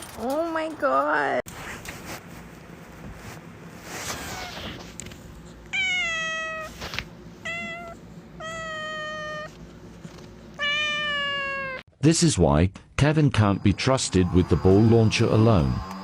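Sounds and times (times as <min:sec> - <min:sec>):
cat meowing: 0:05.7 - 0:06.8, 0:07.4 - 0:09.6, 0:10.6 - 0:11.8.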